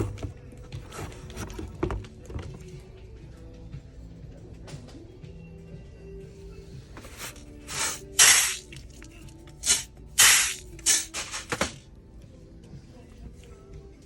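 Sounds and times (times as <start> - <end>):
faint music: 0.0 - 14.0
balloons popping: 7.1 - 11.8.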